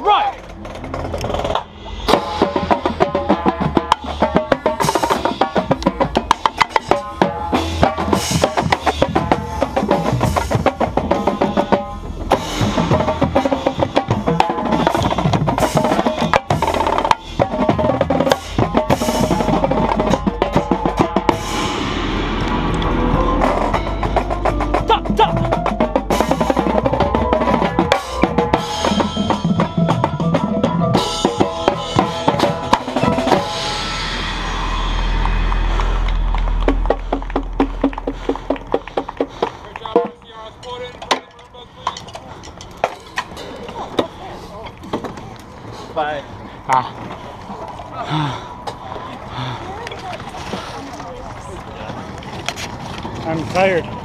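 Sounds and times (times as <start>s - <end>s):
snare drums: 0.0s - 33.6s
marching tenor drums: 0.0s - 35.4s, 36.1s - 41.8s
bass drums: 0.0s - 41.2s.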